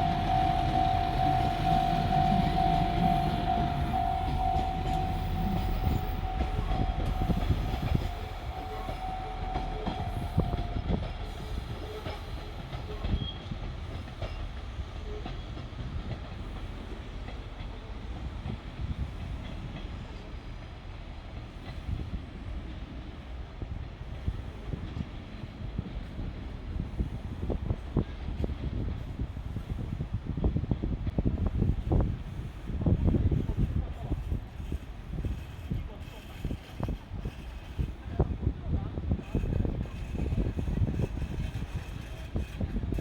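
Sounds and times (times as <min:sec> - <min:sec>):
steady high tone: 0:00.0 - 0:11.8
diesel train rumbling past: 0:00.0 - 0:43.0.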